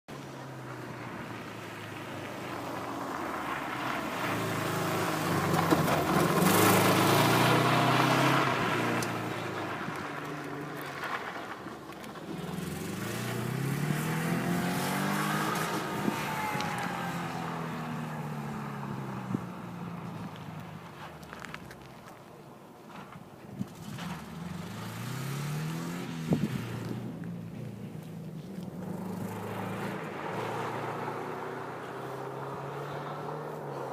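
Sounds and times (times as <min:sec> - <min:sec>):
rally car engine at speed: 0:00.1 - 0:21.3, 0:23.6 - 0:33.9.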